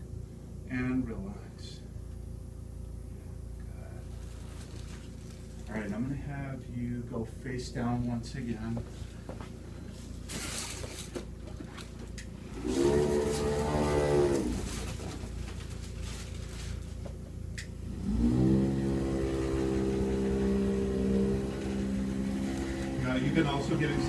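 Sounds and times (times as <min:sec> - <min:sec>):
small electric motor humming: 0:17.8 - 0:24.0.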